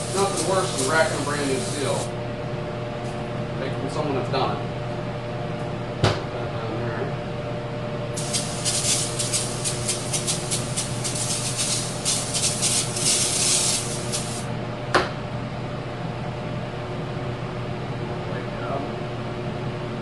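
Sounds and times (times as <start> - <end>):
spray nozzle hissing in pulses: 0.0 - 2.1, 8.2 - 14.5
steady machine hum: 0.0 - 20.0.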